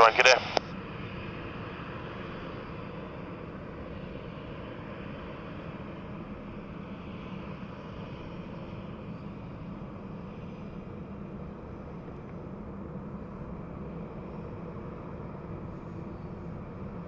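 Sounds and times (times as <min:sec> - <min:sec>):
distant jet engine rumble: 0:00.0 - 0:00.7.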